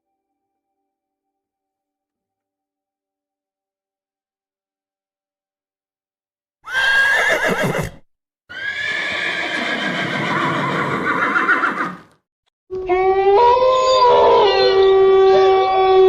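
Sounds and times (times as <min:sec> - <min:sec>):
horse whinnying: 0:06.6 - 0:12.2.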